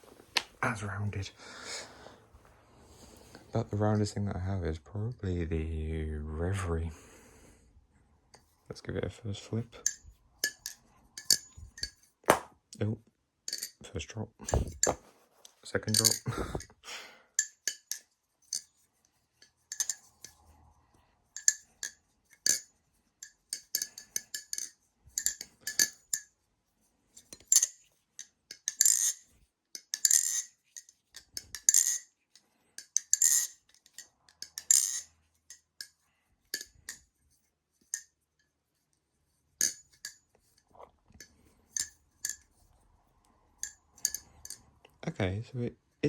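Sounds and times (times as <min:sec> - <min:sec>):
balisong handles clacking: 0:09.4 - 0:12.9, 0:13.5 - 0:16.7, 0:17.4 - 0:18.8, 0:19.4 - 0:20.5, 0:21.3 - 0:26.3, 0:27.2 - 0:29.2, 0:29.8 - 0:37.2, 0:37.8 - 0:38.5, 0:39.6 - 0:42.6, 0:43.6 - 0:45.0.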